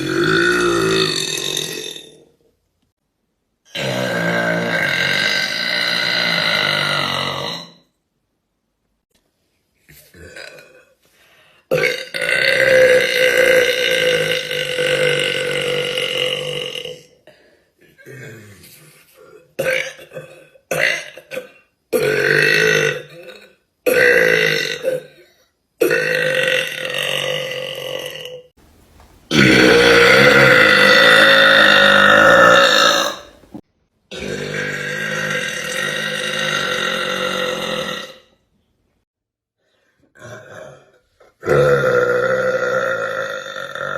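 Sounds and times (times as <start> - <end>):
faint small sounds: 28.6 - 33.6
woman burping: 28.7 - 38.2.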